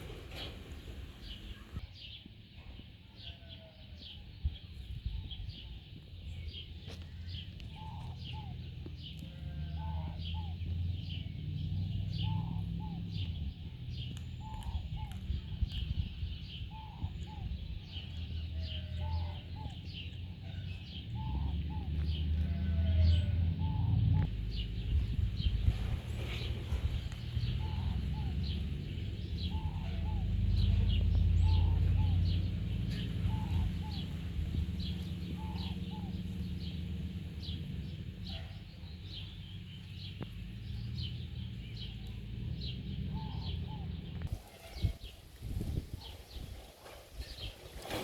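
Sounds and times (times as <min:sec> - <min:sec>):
small birds chirping: 0:00.0 - 0:02.7, 0:04.0 - 0:48.0.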